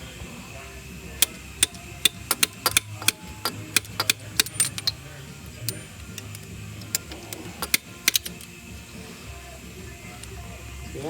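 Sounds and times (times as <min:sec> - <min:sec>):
steady low hum: 0:00.0 - 0:11.0
hand tools clicking on metal: 0:01.1 - 0:09.1, 0:09.9 - 0:10.6.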